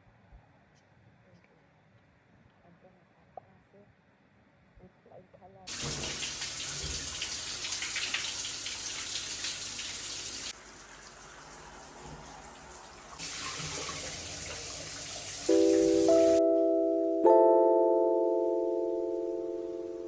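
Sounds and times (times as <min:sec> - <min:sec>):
running water rushing: 0:05.7 - 0:16.4
sustained keyboard chords: 0:15.4 - 0:20.0.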